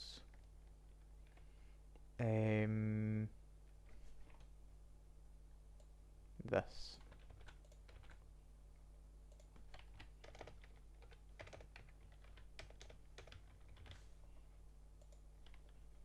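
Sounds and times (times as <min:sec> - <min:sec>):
typing on computer keyboard: 0:07.0 - 0:08.2, 0:09.3 - 0:14.0, 0:15.0 - 0:15.8.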